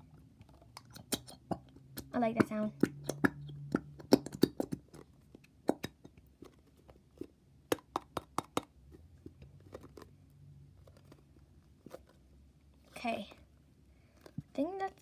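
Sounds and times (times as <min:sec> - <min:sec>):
sharp clicks and pops: 0:00.4 - 0:06.5.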